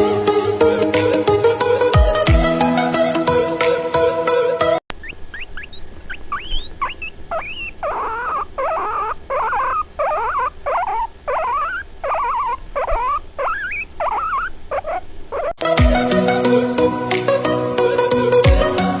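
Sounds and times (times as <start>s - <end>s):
guinea pig squealing: 4.9s - 15.6s.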